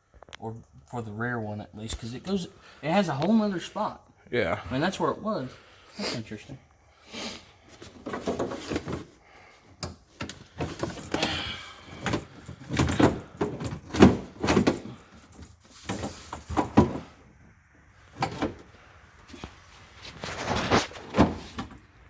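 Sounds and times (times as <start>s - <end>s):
parts knocking and rattling: 7.7s - 9.2s, 9.8s - 17.4s.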